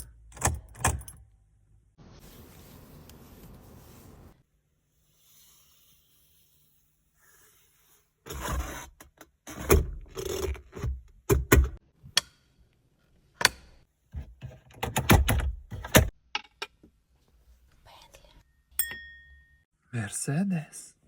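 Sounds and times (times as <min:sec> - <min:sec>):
car parts clicking and knocking: 0:00.0 - 0:01.3, 0:10.6 - 0:12.3, 0:13.4 - 0:17.0.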